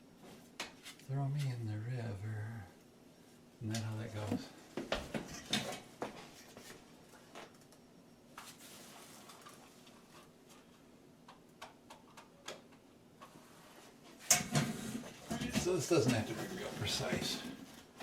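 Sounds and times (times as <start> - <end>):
faint steady hum: 0.0 - 18.0.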